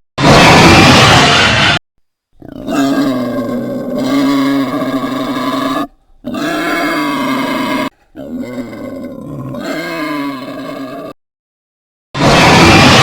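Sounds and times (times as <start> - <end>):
rasping dinosaur roar: 0.2 - 1.8, 2.4 - 11.2, 12.2 - 13.0.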